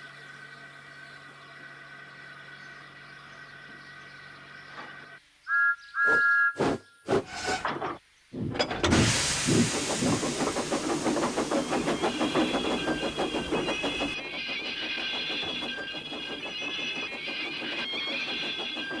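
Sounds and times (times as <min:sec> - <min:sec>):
locomotive exhaust chuffs: 0:06.1 - 0:19.0
steam hissing: 0:08.4 - 0:19.0.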